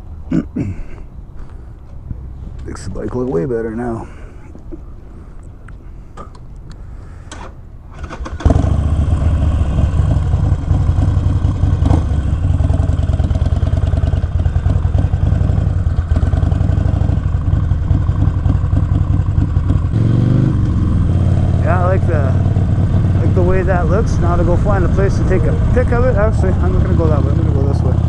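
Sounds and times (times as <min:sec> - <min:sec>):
motorcycle engine idling: 0:08.4 - 0:28.0.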